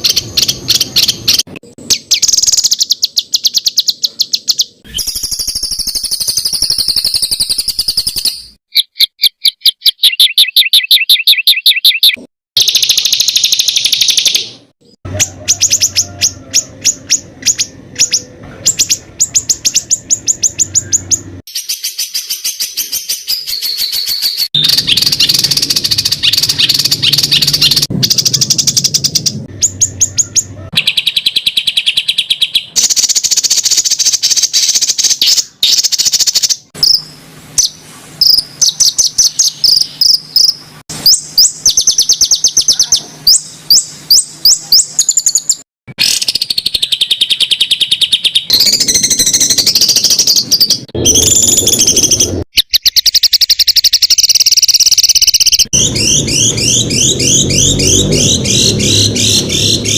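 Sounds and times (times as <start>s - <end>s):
songbirds singing harsh high notes: 0.0s - 59.9s.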